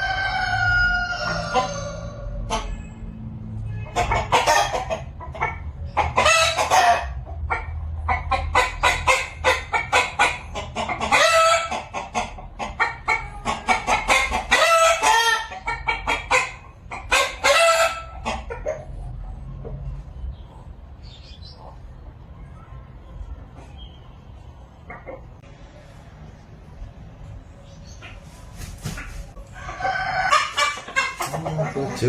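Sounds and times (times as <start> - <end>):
rooster crowing: 0.0 - 2.7, 29.5 - 30.9
hens clucking: 0.0 - 26.8, 27.5 - 32.0.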